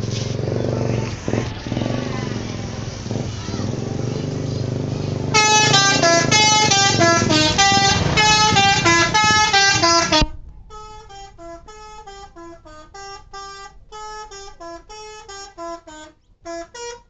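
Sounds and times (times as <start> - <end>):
bus engine rumble: 0.0 - 17.0
musical air horn melody: 5.2 - 17.0.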